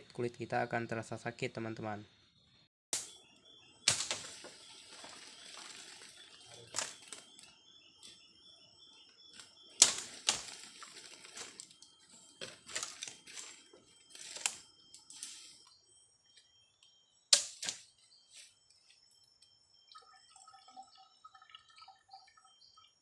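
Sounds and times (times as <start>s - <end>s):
high-pitched insect drone: 3.0s - 21.2s
blade chopping bamboo: 3.9s - 4.5s.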